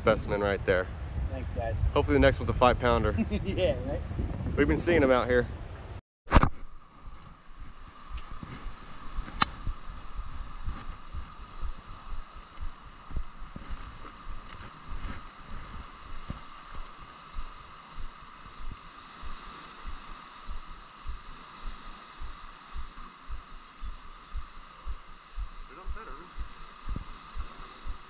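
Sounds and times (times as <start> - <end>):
wind buffeting microphone: 0.0 - 6.0, 6.8 - 28.0
faint steady hum: 6.6 - 28.0.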